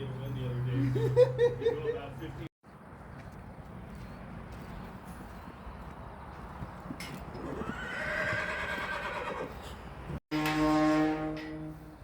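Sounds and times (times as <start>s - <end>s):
horse whinnying: 7.4s - 9.5s.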